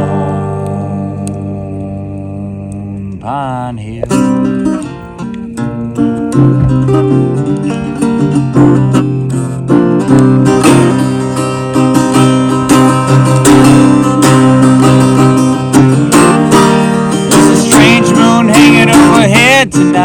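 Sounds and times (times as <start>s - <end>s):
person singing: 0.0s - 7.8s, 12.9s - 20.0s
acoustic guitar strumming: 0.0s - 20.0s.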